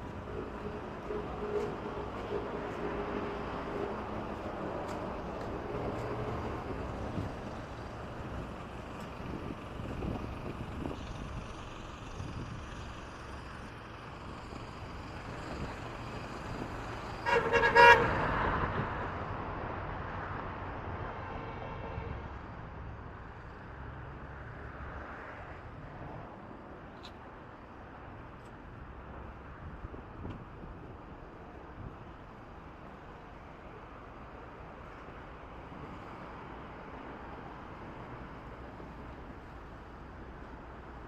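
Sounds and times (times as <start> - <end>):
street traffic noise: 0.0 - 41.0
vehicle horn honking: 17.2 - 18.4.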